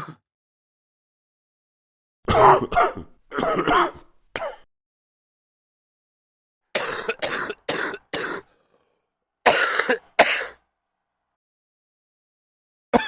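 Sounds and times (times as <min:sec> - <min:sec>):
man coughing: 0:02.3 - 0:04.6, 0:06.8 - 0:08.5, 0:09.4 - 0:10.6.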